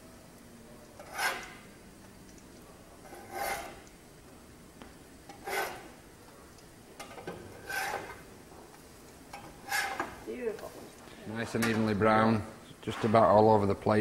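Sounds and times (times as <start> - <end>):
spatula scraping a griddle: 1.0 - 1.7, 3.0 - 3.9, 5.3 - 6.0, 7.3 - 8.3, 9.3 - 10.2.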